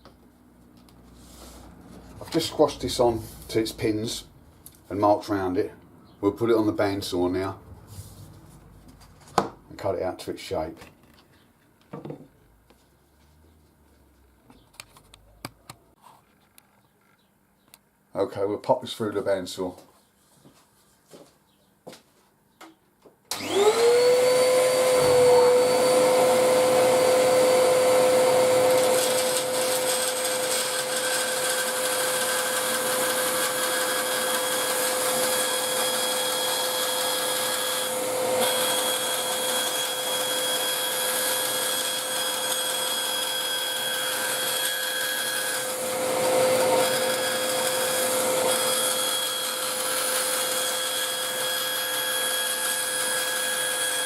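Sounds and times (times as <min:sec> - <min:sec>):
bandsaw cutting wood: 0:23.3 - 0:54.0
bandsaw motor whine: 0:23.3 - 0:54.0.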